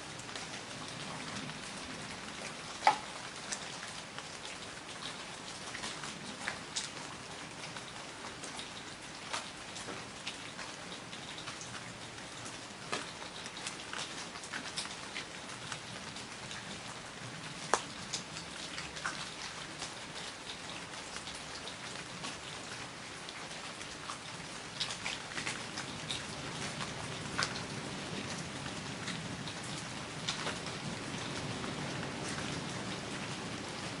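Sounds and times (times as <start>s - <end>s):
heavy rain falling: 0.0s - 34.0s
loud raindrops striking nearby: 0.0s - 34.0s.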